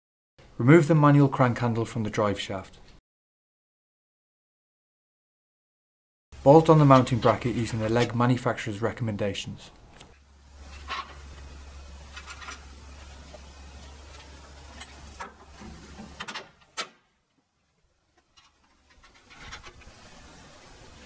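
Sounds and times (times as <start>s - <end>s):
steady low hum: 6.4s - 16.0s.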